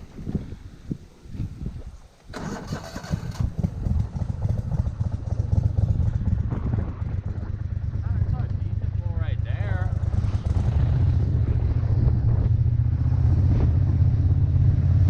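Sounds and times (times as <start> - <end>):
boat motor starting and running: 2.2 - 6.3.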